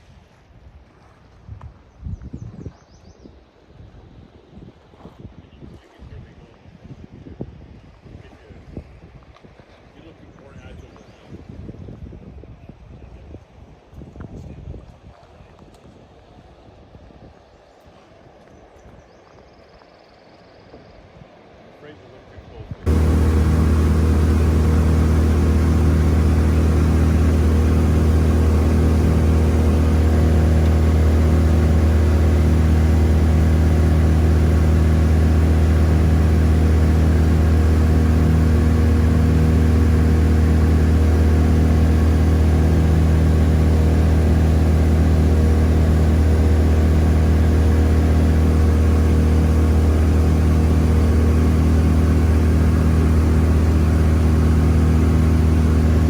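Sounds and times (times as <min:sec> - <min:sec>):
boat engine droning: 0:22.9 - 0:56.0.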